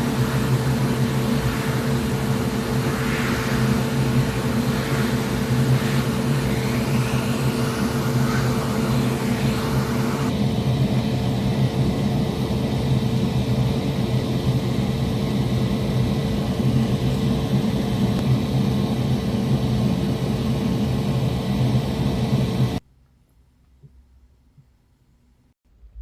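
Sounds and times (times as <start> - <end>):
small electric motor whirring: 0.0 - 10.3.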